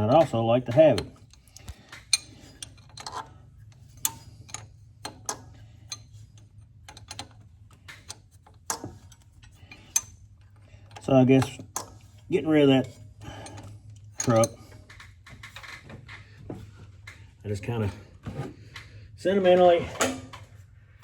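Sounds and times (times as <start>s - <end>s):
metal tools clinking: 0.0s - 16.3s.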